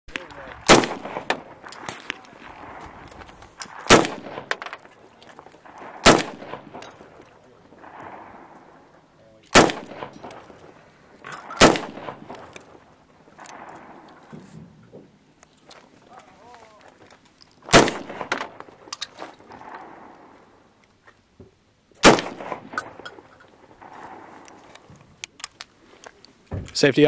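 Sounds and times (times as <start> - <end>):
fainter sharp cracks: 0.1 - 14.7, 15.4 - 21.0, 22.0 - 26.4
loud rifle shots: 0.6 - 5.0, 5.6 - 10.8, 11.4 - 14.3, 17.6 - 20.3, 22.0 - 24.6.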